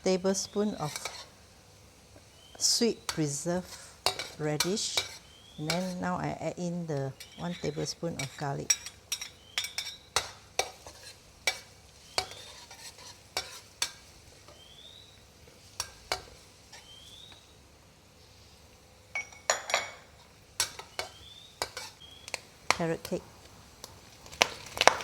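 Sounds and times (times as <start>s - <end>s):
faint frying sizzle: 0.0s - 25.0s
metal spatula clinking and scraping: 0.8s - 1.3s, 3.1s - 6.0s, 7.2s - 14.6s, 15.8s - 17.0s, 19.2s - 22.0s.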